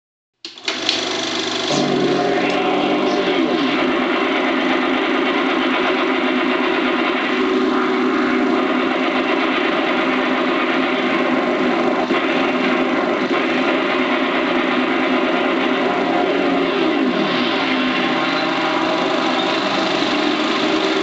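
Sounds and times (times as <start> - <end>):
steady motor drone: 0.7 - 21.0.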